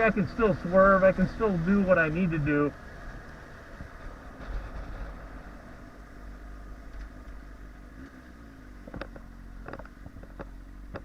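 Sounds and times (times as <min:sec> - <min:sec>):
wind rumble on microphone: 0:00.0 - 0:06.2
motorcycle engine running: 0:00.0 - 0:11.0.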